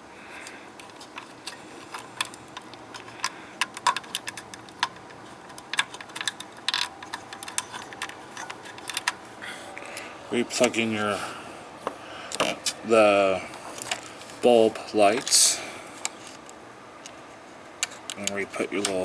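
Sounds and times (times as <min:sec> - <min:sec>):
plastic connectors clicking: 0:00.4 - 0:10.8, 0:17.8 - 0:19.0.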